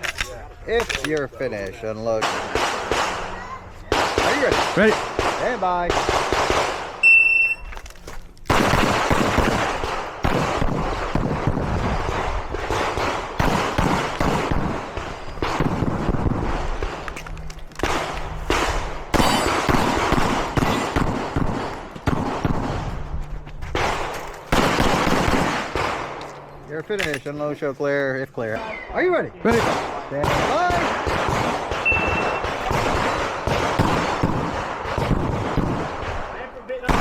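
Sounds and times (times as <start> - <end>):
rapid pistol fire: 2.2 - 3.3, 3.9 - 7.0, 8.5 - 17.1, 17.8 - 22.9, 23.8 - 26.2, 29.5 - 37.0
shot timer beep: 7.0 - 7.7.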